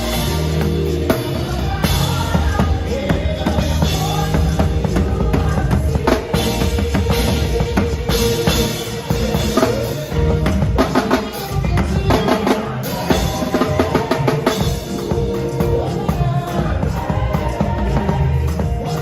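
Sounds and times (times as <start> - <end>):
music from other instruments: 0.0 - 19.0.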